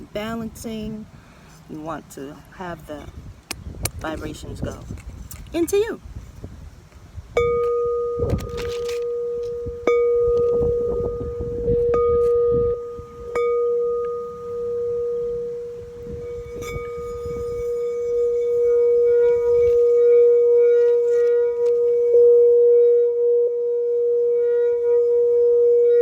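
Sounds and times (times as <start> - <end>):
singing bowl tone: 7.4 - 26.0.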